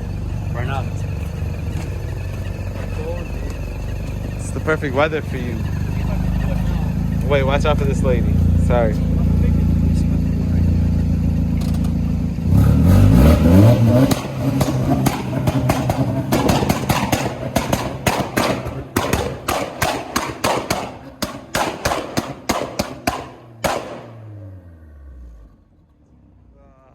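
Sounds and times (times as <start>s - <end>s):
car exhaust accelerating: 0.0s - 26.9s
sharp knocks and clatter: 11.5s - 12.1s, 13.7s - 24.2s.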